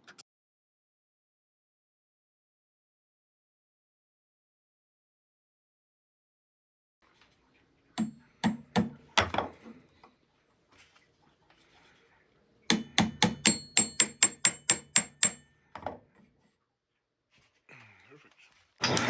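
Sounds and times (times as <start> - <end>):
hammer blows with metallic ring: 8.0 - 9.0, 12.7 - 15.7.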